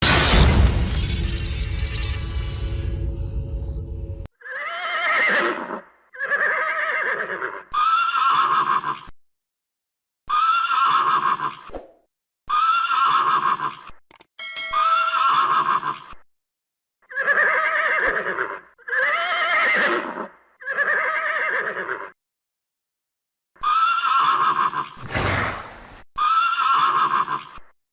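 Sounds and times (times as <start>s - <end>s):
horse whinnying: 4.4s - 9.0s, 17.1s - 22.2s.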